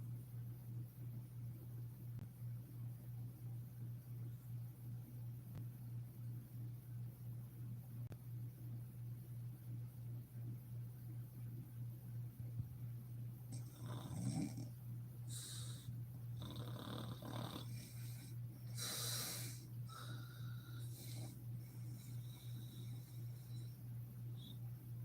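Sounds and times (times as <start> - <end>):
steady low hum: 0.0 - 25.0
woman snoring: 13.6 - 14.7, 15.4 - 18.0.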